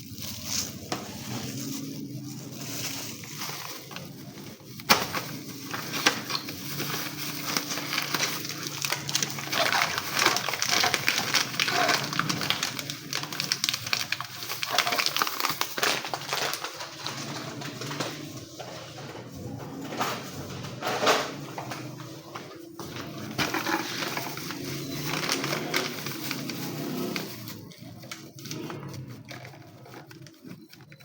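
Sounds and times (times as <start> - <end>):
dense crackling and rustling: 0.0 - 31.0.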